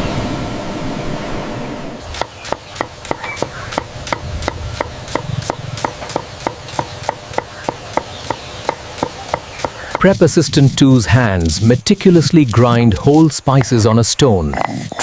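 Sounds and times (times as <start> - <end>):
hiss like wind or surf: 0.0 - 11.8
chopping on a hard surface: 2.2 - 10.2.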